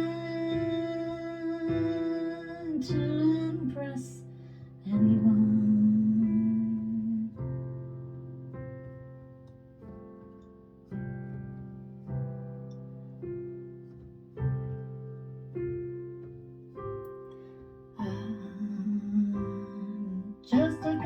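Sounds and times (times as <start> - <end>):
slow piano chords: 0.0 - 21.0.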